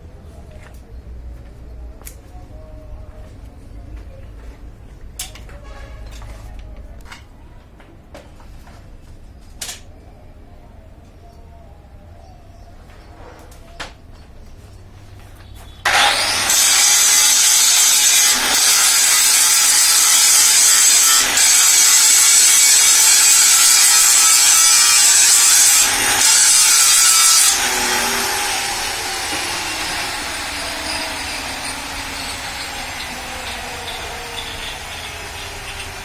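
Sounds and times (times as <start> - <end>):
power tool grinding metal: 15.8 - 36.0.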